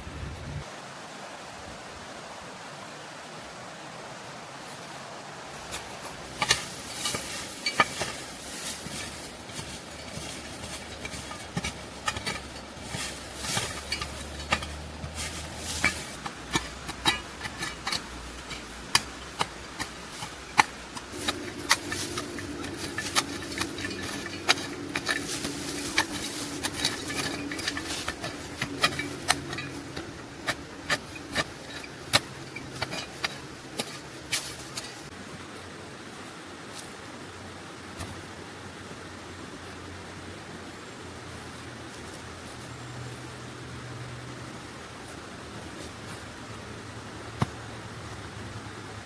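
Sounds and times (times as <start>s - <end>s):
hard objects knocking: 6.3s - 35.1s.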